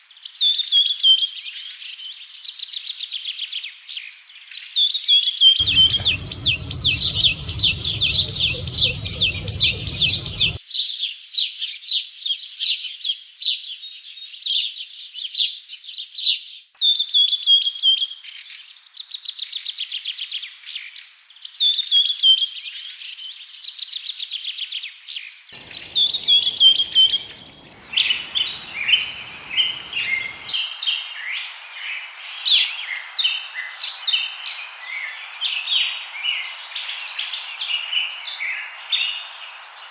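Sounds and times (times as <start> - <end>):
songbirds chirping and trilling: 5.6 - 10.6, 25.6 - 39.9.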